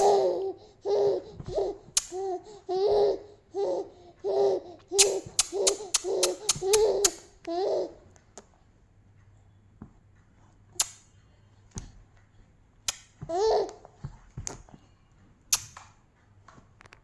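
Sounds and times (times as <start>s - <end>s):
baby vocalizing: 0.0s - 8.0s.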